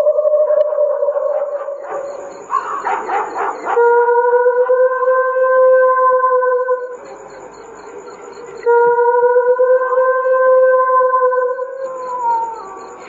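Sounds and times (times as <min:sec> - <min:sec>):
faint high chirps: 0:00.0 - 0:09.7, 0:11.3 - 0:13.0
dog howling and yelping: 0:00.4 - 0:04.1, 0:11.9 - 0:13.0.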